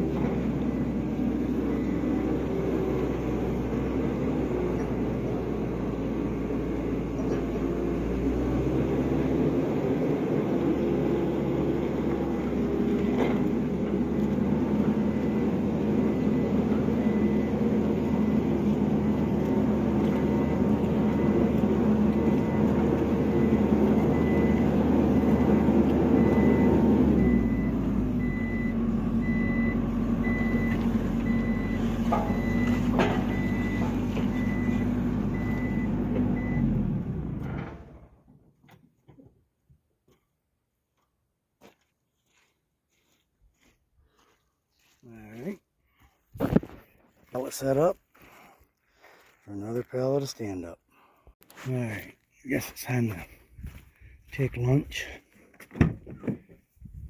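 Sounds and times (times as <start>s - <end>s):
diesel engine under load: 0.0s - 39.6s, 43.6s - 57.0s
reversing alarm beeping: 14.0s - 36.9s.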